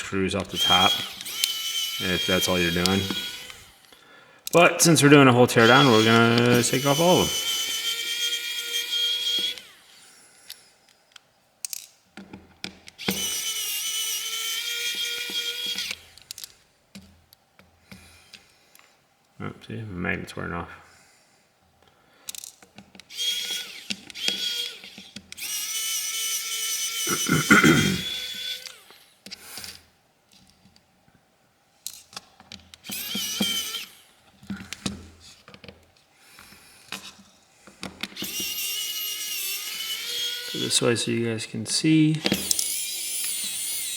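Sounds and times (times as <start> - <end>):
electric screwdriver whine: 0.0 - 10.8, 12.9 - 16.6, 23.0 - 29.9, 32.8 - 35.2, 37.8 - 41.3, 42.0 - 43.9
light clicks of small screws: 9.3 - 13.5, 21.8 - 25.8, 31.8 - 38.6.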